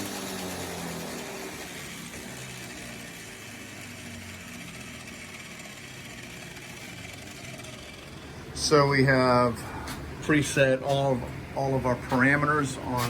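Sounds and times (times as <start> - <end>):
small electric motor whirring: 0.0 - 8.9.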